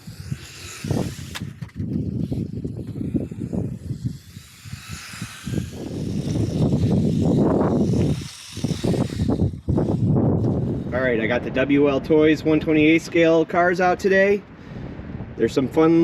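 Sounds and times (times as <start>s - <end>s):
faint electric motor whine: 0.0s - 12.0s.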